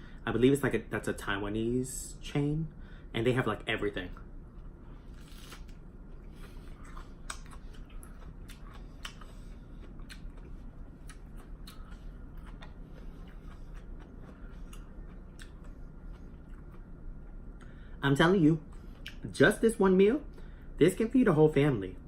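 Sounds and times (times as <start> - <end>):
low background hum: 0.0 - 22.0
chewing crisp lettuce: 5.0 - 17.4.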